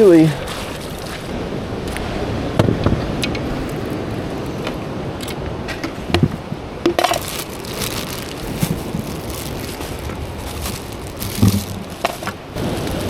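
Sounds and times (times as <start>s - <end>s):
footsteps and fishing gear clinks: 0.0s - 13.0s
ocean wash over rock ledge: 0.0s - 13.0s
splashing spray: 7.5s - 13.0s.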